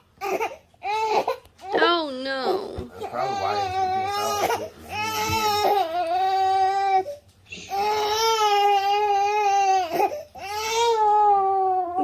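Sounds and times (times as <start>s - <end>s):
baby crying: 3.0s - 12.0s.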